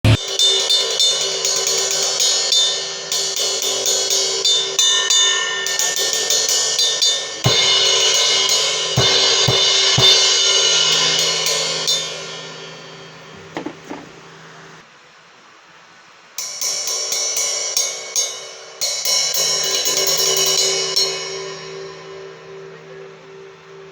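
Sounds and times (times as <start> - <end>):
crash cymbal hits: 0.0 - 14.8
ride cymbal strokes: 0.1 - 14.9, 16.0 - 23.9.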